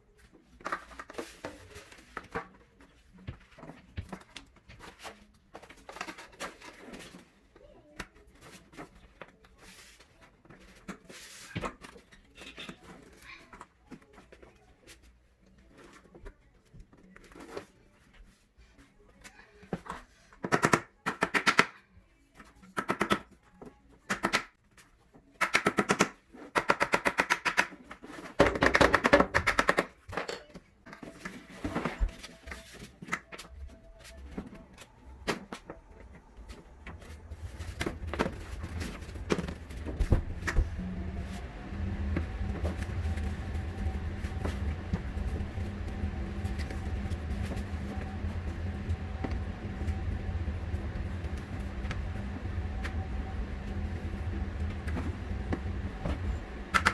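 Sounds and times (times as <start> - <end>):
steady low hum: 34.2 - 56.9.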